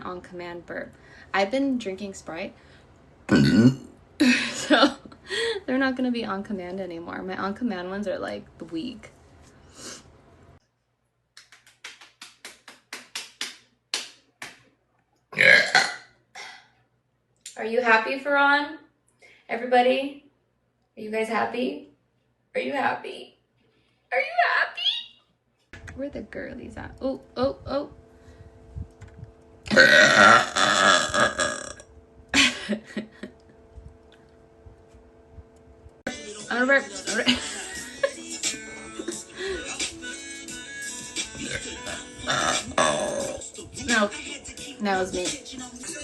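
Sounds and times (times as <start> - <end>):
woman belching loudly: 3.3 - 3.9, 15.4 - 16.6, 29.7 - 31.8, 41.4 - 43.4.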